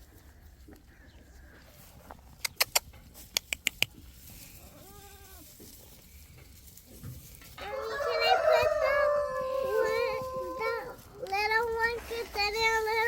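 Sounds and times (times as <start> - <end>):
sharp clicks: 2.4 - 4.0.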